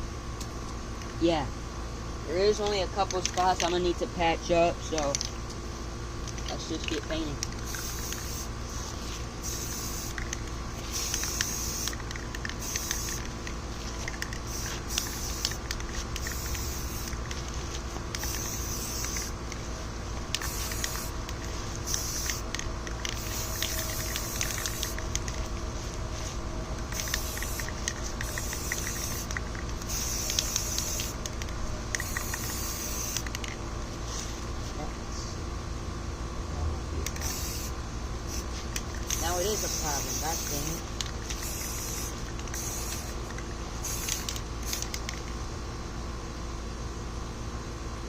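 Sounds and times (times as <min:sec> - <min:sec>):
spray paint can hissing: 0:06.3 - 0:34.2, 0:37.0 - 0:45.3.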